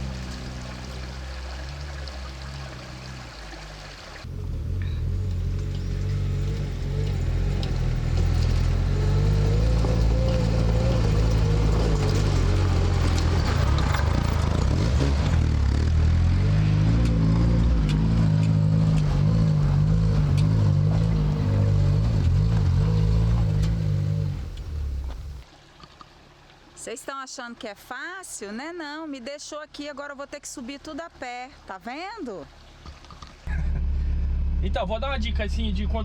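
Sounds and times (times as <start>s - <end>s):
car engine pulling under load: 0.0s - 25.4s.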